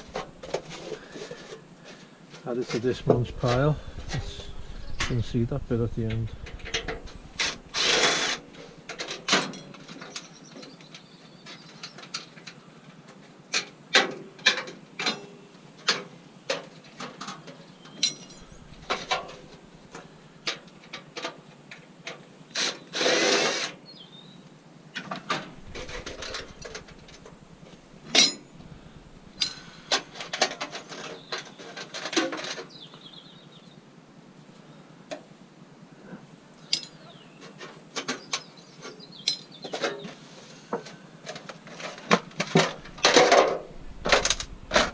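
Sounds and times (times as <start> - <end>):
power tool bursts: 3.3 - 8.5
scrap metal clinking: 28.0 - 28.6.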